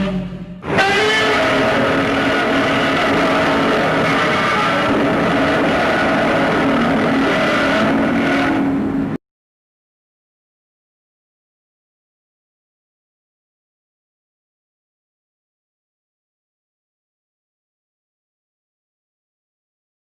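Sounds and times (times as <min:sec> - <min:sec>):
monster roar: 0:00.6 - 0:08.8.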